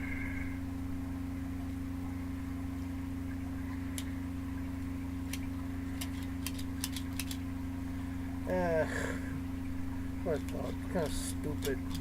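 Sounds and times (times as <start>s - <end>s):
low electrical hum: 0.0s - 12.0s
plastic toy clicks: 6.0s - 7.4s.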